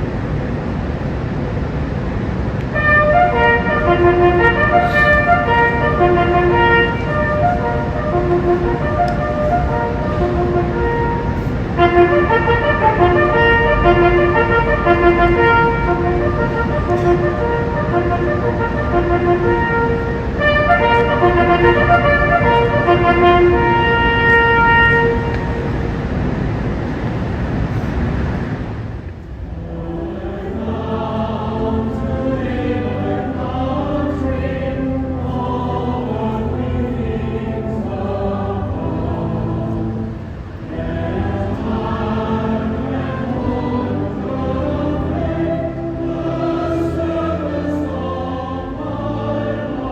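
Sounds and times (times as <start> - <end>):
steady rushing noise: 0.0 - 49.9
street traffic rumble: 0.0 - 49.9
choir singing: 2.6 - 26.2, 29.4 - 49.9
slow chordal music: 2.6 - 26.4, 29.4 - 49.9.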